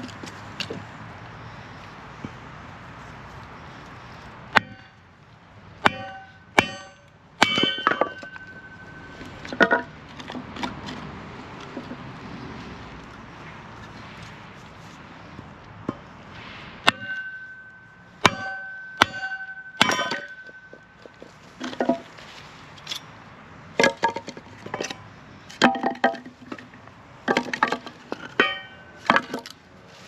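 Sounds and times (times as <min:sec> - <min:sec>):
sledgehammer clanging on metal: 0:04.5 - 0:05.0, 0:05.8 - 0:10.8, 0:16.8 - 0:22.2, 0:23.8 - 0:29.6.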